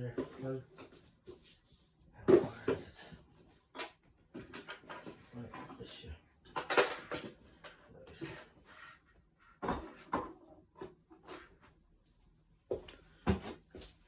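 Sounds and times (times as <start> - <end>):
cupboard doors knocking and banging: 9.6 - 10.5.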